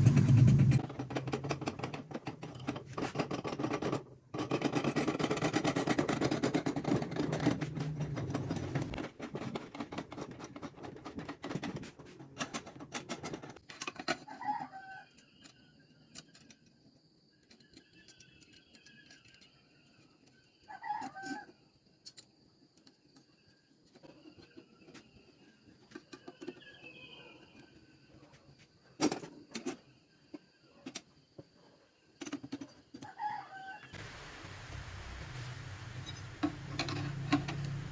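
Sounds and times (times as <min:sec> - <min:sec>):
rooster crowing: 0:14.3 - 0:15.2, 0:20.7 - 0:21.5, 0:33.0 - 0:34.0.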